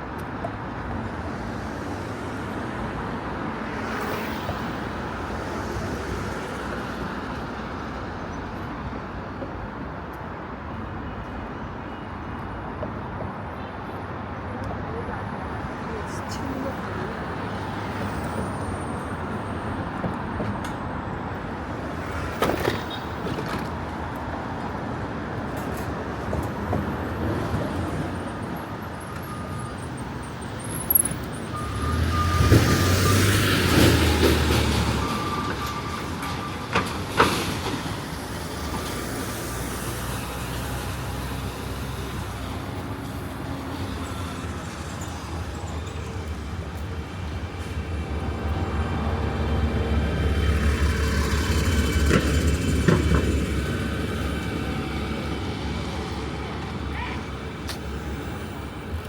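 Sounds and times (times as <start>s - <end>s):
passing traffic: 0.0s - 59.0s
loud vehicle rumbling past: 31.4s - 37.9s, 45.5s - 58.9s.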